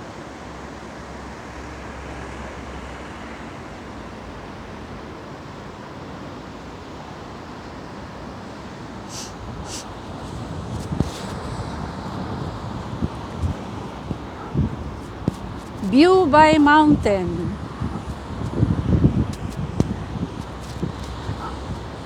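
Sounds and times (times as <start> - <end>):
wind noise: 9.1 - 22.0.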